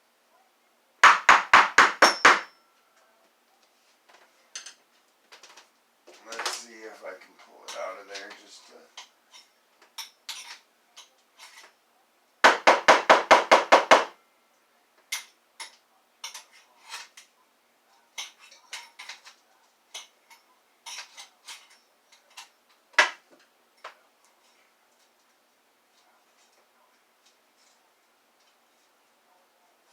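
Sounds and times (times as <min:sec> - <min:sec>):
rapid sharp knocks: 0:01.0 - 0:02.5, 0:12.4 - 0:14.1.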